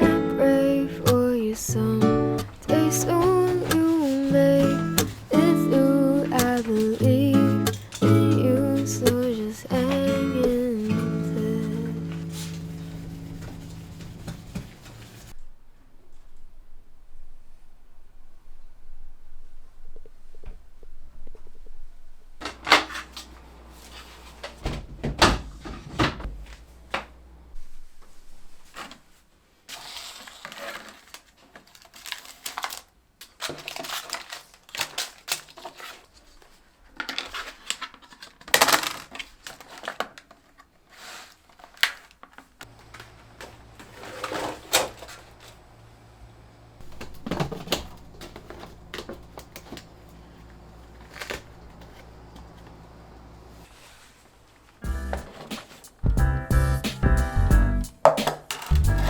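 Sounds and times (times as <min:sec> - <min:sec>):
objects being handled and set down: 0:02.4 - 0:05.4, 0:07.7 - 0:15.4, 0:28.0 - 0:45.6, 0:46.8 - 0:52.8, 0:58.0 - 0:59.0.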